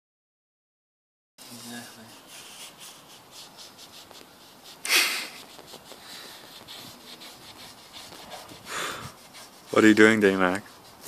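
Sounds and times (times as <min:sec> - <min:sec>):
scrubbing against metal: 0:02.1 - 0:11.0
loud breathy whoosh: 0:08.6 - 0:09.2.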